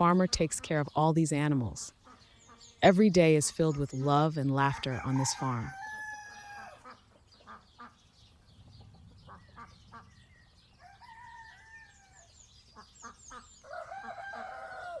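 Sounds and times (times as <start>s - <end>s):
rooster crowing: 4.8s - 6.8s, 10.8s - 12.3s, 13.6s - 15.0s
chickens clucking: 8.7s - 15.0s.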